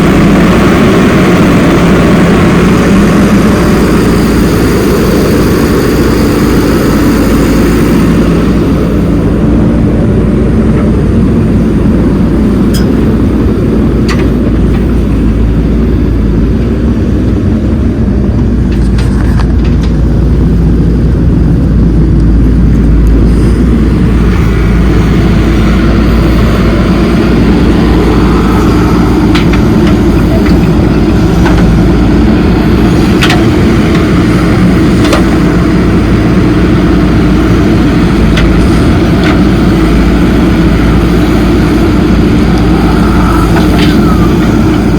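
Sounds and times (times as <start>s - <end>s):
diesel engine running: 0.0s - 44.9s
clanks and knocks: 18.4s - 20.1s.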